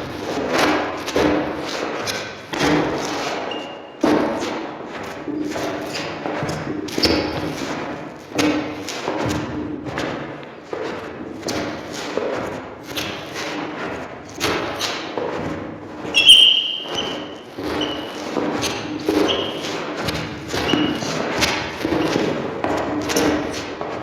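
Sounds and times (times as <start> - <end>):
footsteps on wooden floor: 4.0 - 24.0
sharp high squeak: 16.1 - 18.1.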